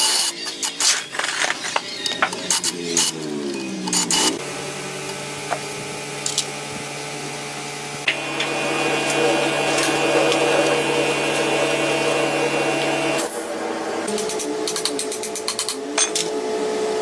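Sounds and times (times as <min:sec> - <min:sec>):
power tool motor running: 0:01.5 - 0:14.1.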